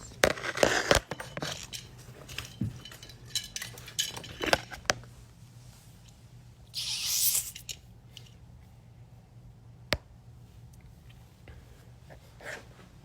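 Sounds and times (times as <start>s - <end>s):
metallic clinks and rattles: 1.1s - 4.7s.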